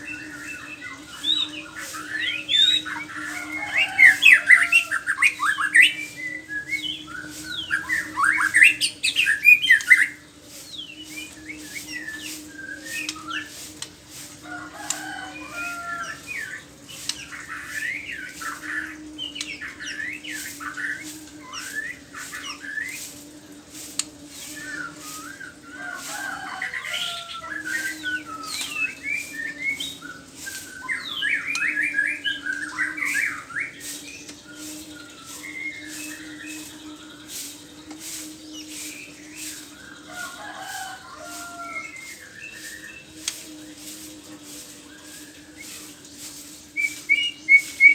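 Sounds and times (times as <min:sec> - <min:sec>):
bird singing whistles: 0:24.6 - 0:25.6, 0:46.8 - 0:47.9.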